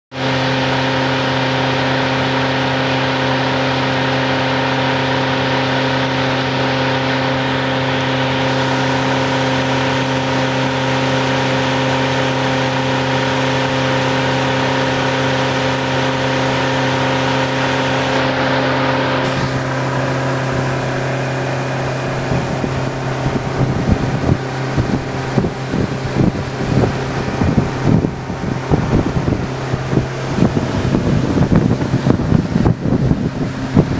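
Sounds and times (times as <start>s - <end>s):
motorboat engine hum: 0.0s - 33.9s
wind buffeting microphone: 19.2s - 33.9s.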